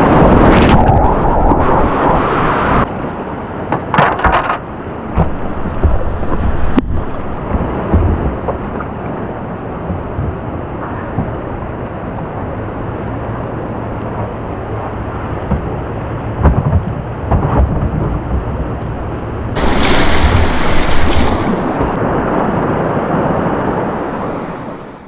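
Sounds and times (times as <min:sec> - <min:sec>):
rushing whitewater: 0:19.6 - 0:25.0.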